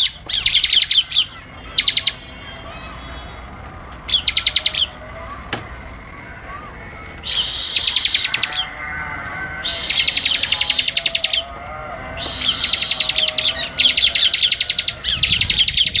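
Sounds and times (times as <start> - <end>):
soft bird twittering: 0.0 - 5.0, 7.2 - 8.8, 9.6 - 11.5, 12.2 - 16.0
bird buzzy trills: 4.1 - 5.0, 7.2 - 8.8, 9.5 - 16.0.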